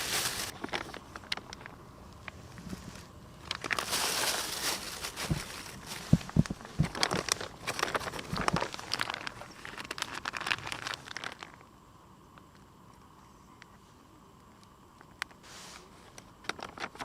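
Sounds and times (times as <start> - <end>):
plastic packaging crinkling: 0.0 - 1.8, 2.7 - 11.7, 16.1 - 17.0.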